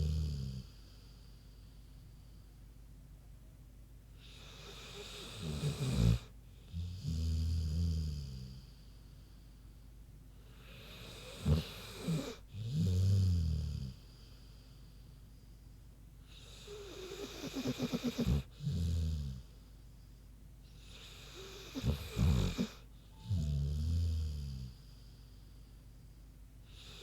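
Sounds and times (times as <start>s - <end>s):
dog snoring: 0.0s - 0.9s, 4.2s - 8.7s, 10.4s - 14.1s, 16.3s - 19.5s, 20.8s - 24.8s, 26.7s - 27.0s.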